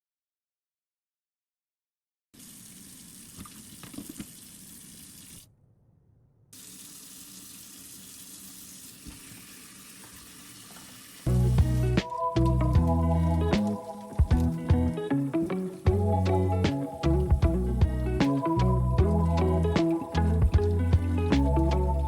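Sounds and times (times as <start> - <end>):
tap water running into sink: 2.4 - 5.4, 6.6 - 12.9
music: 11.3 - 22.0.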